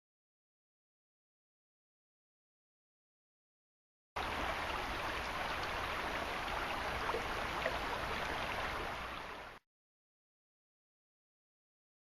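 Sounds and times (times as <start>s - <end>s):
rushing river water: 4.2s - 9.6s.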